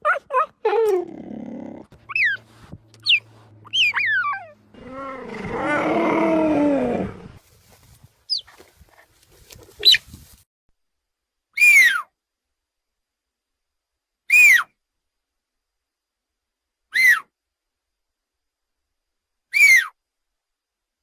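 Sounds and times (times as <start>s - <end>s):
shrill sweeping creature chirps: 3.0s - 5.2s
low creature call: 3.7s - 7.4s.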